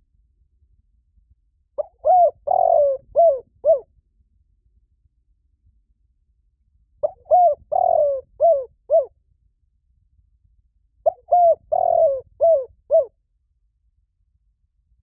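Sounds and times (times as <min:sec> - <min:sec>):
dove cooing: 0:01.8 - 0:03.9, 0:07.0 - 0:09.1, 0:11.0 - 0:13.1.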